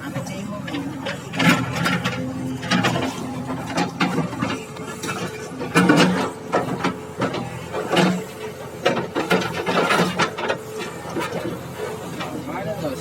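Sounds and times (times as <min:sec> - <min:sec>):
digger metal parts clanking: 0:00.1 - 0:13.0.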